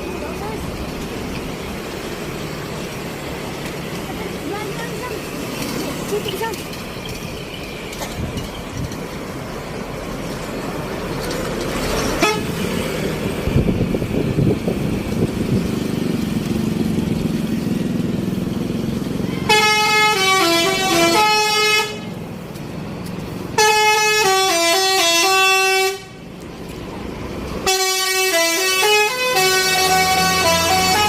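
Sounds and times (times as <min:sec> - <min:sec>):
vehicle engine and traffic: 0:00.0 - 0:31.0
bus musical horn tune: 0:12.2 - 0:12.7, 0:19.4 - 0:22.1, 0:23.5 - 0:26.3, 0:27.6 - 0:31.0.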